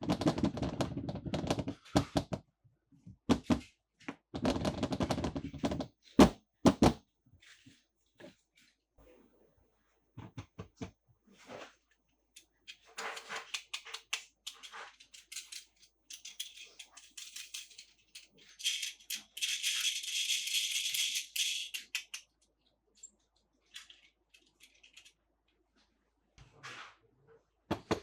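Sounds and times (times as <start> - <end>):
small handling clicks and rattles: 12.4 - 25.2.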